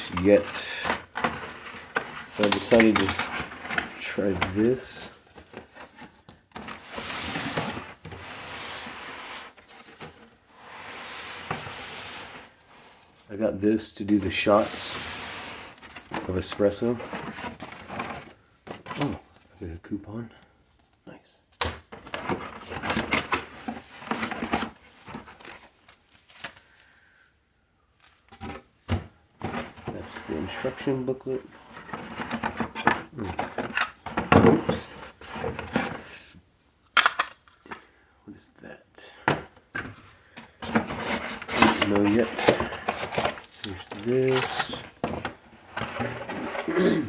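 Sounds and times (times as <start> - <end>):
paper packaging rustling: 0.0 - 10.3, 40.6 - 46.7
cardboard and wrapping rustling: 0.0 - 19.6, 21.8 - 27.0, 28.0 - 36.3, 39.4 - 47.0.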